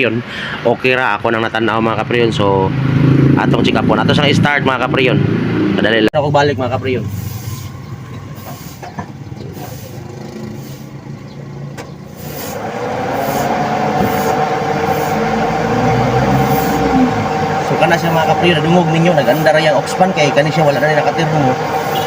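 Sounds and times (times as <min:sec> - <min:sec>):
car engine cranking: 0:07.2 - 0:22.0.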